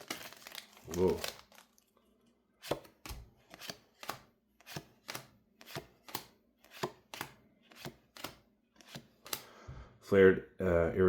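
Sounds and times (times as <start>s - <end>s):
trading cards flicked clicking: 2.7s - 9.5s.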